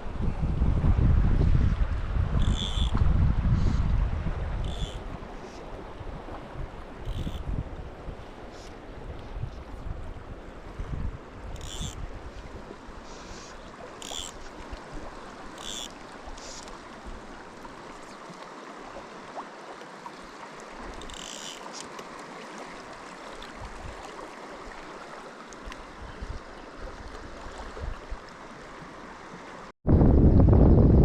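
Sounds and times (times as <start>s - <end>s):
wind buffeting microphone: 0.0s - 8.2s, 9.0s - 12.7s, 29.8s - 31.0s
river water running: 0.0s - 29.7s.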